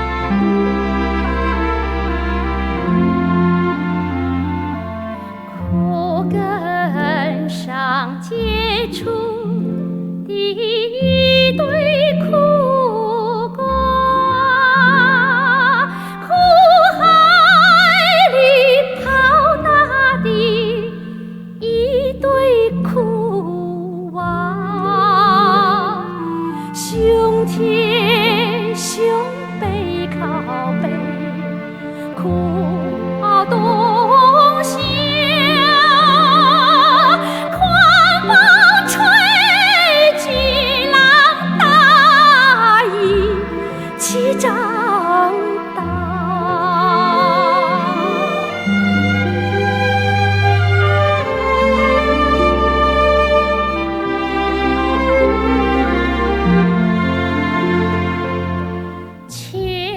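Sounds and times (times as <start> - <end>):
old popular song with vibrato melody: 0.0 - 9.5, 24.2 - 59.2
slow orchestral accompaniment: 0.0 - 59.9.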